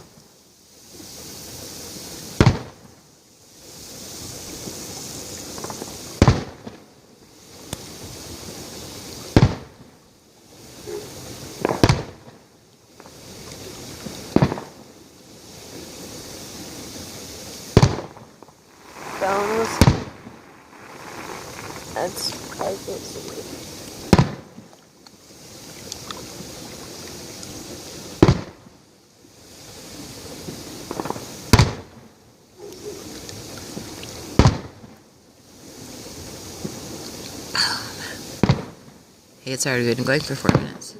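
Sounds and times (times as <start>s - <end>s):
firework crackles: 0.0s - 40.9s
firework shells booming: 2.4s - 3.0s, 5.5s - 6.8s, 9.3s - 10.0s, 11.5s - 12.4s, 14.1s - 14.8s, 17.6s - 24.7s, 28.2s - 28.7s, 30.5s - 32.0s, 33.7s - 34.9s, 38.4s - 39.0s.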